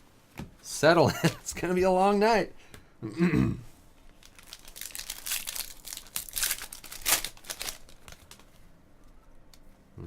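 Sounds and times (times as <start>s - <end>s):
card pack wrappers crinkling and tearing: 4.1s - 8.7s.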